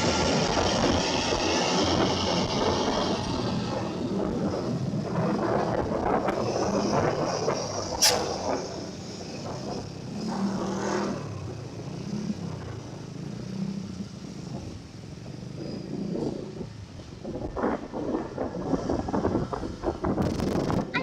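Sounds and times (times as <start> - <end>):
sharp click: 8.0 - 8.4.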